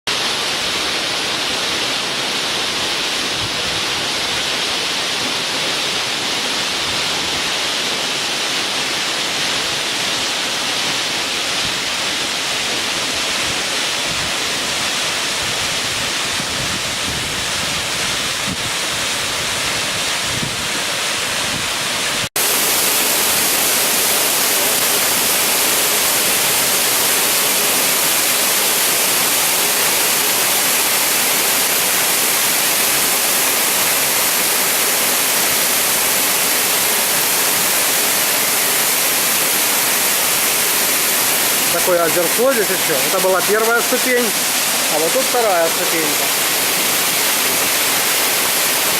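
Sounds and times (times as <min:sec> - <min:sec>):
waterfall rushing: 0:00.1 - 0:48.9.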